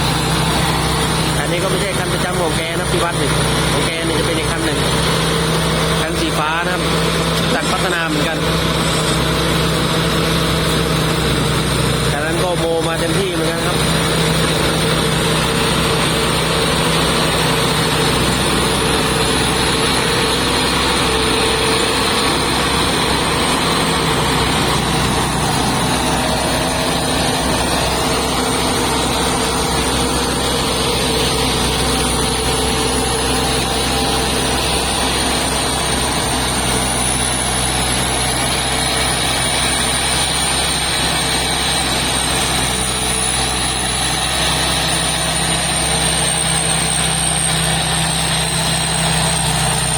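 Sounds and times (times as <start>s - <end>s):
combine harvester diesel engine: 0.0s - 49.9s.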